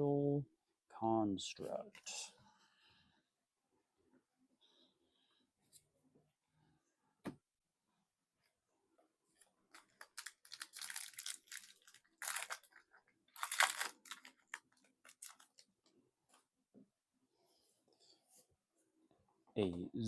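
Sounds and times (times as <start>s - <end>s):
foil wrapper tearing: 9.7s - 15.6s
foil wrapper rustling: 9.7s - 15.7s.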